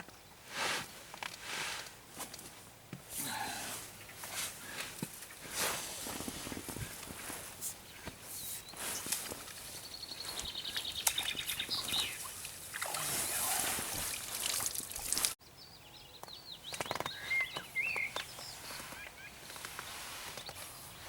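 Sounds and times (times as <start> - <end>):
bird chirping: 7.7 - 19.8
water sloshing and splashing: 9.0 - 15.4.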